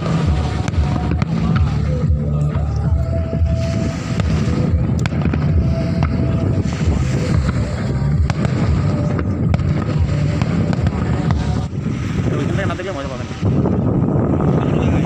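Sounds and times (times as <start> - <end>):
low rumble: 0.0 - 15.0
firework cracks: 4.0 - 12.5.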